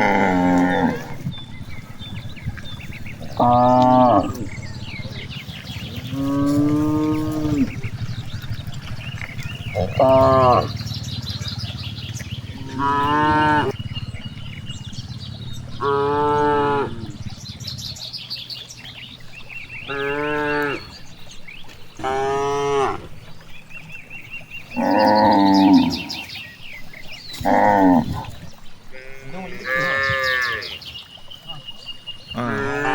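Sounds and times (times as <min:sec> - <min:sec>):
cow mooing: 0:00.0 - 0:01.3, 0:03.2 - 0:05.2, 0:06.0 - 0:08.1, 0:09.5 - 0:10.8, 0:12.5 - 0:13.8, 0:15.8 - 0:17.3, 0:19.9 - 0:21.0, 0:22.0 - 0:23.2, 0:24.8 - 0:26.3, 0:28.9 - 0:30.8, 0:32.3 - 0:32.9.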